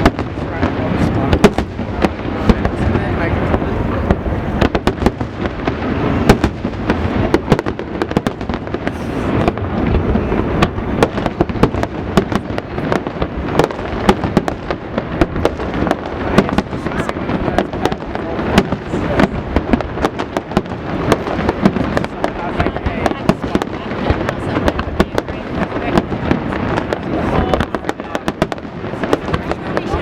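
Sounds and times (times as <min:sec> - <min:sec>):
fireworks bangs and crackles: 0:00.0 - 0:30.0
low rumble: 0:08.9 - 0:13.6.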